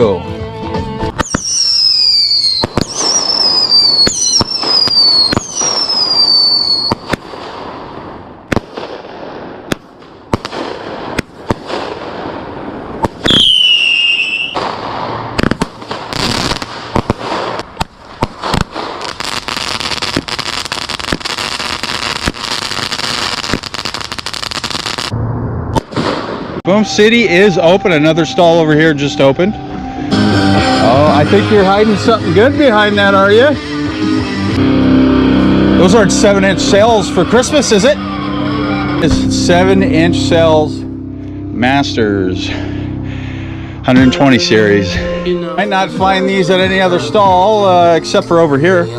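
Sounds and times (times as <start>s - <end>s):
firework bangs: 1.1s - 26.6s
rapid crackling firework pops: 1.2s - 1.6s, 2.6s - 7.8s, 8.5s - 12.3s, 13.0s - 25.1s
falling firework whistles: 1.2s - 7.2s, 13.0s - 17.6s.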